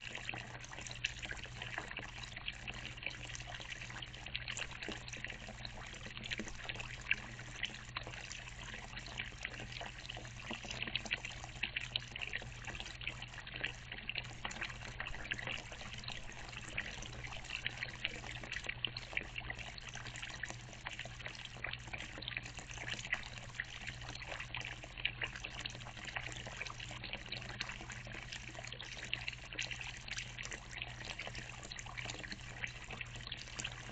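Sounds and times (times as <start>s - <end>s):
water trickling: 0.0s - 33.9s.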